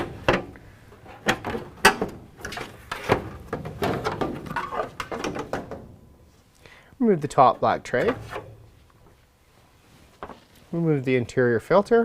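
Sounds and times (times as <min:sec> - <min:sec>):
cover rattling and scraping: 0:00.0 - 0:06.0, 0:07.6 - 0:08.8.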